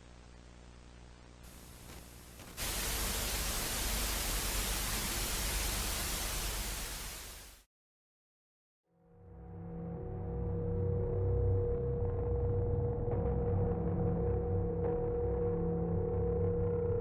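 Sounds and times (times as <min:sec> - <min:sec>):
low electrical buzzing hum: 0:00.0 - 0:07.5
television static hiss: 0:00.0 - 0:07.6.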